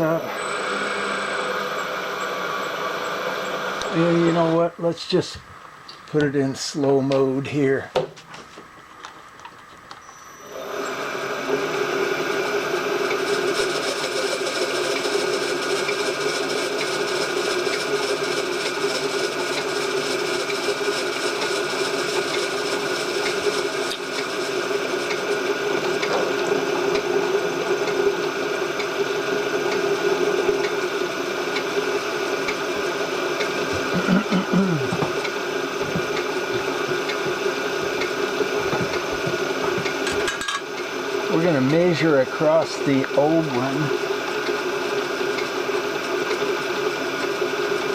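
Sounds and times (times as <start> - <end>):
machine motor humming with rattle: 0.0 - 7.6, 8.2 - 47.9.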